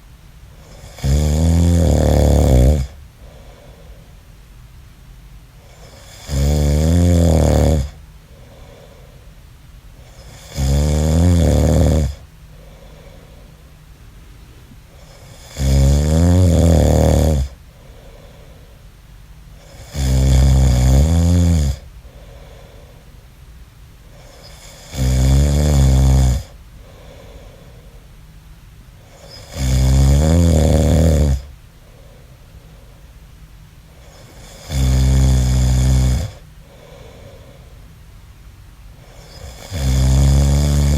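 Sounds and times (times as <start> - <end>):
man snoring loudly: 0.6 - 3.0, 5.7 - 8.0, 10.2 - 12.2, 15.0 - 17.6, 19.6 - 21.8, 24.2 - 26.6, 29.2 - 31.5, 34.0 - 37.0, 39.0 - 40.9
faint breathing out: 3.2 - 4.2, 8.2 - 9.4, 12.5 - 13.8, 17.7 - 18.9, 22.0 - 23.2, 26.8 - 28.2, 36.3 - 37.9.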